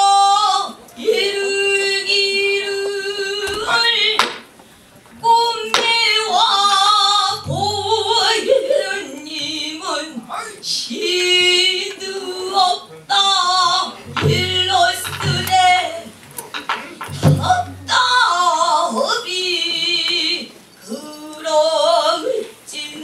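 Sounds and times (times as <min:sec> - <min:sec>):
barrel drum knocks: 0:07.4 - 0:08.5, 0:14.1 - 0:15.9, 0:17.0 - 0:18.0.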